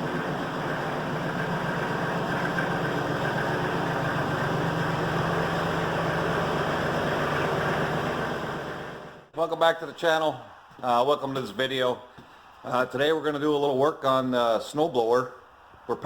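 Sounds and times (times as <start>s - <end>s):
engine idling: 0.0s - 9.3s.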